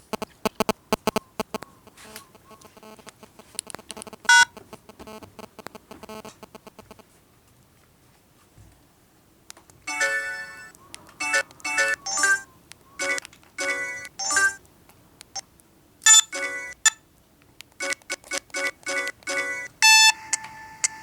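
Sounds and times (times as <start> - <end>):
polyphonic phone ringtone: 9.9 - 14.6, 16.1 - 17.0, 17.8 - 21.0.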